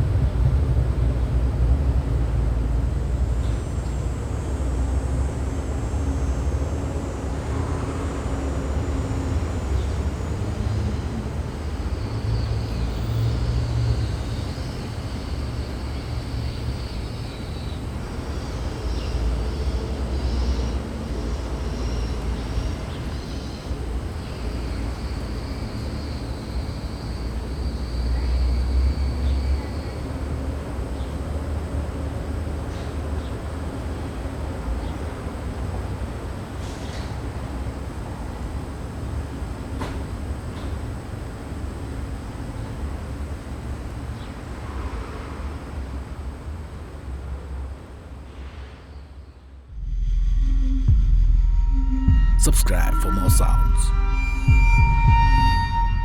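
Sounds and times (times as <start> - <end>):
distant traffic rumble: 0.0 - 36.3
faint high-pitched sounds: 51.6 - 56.0.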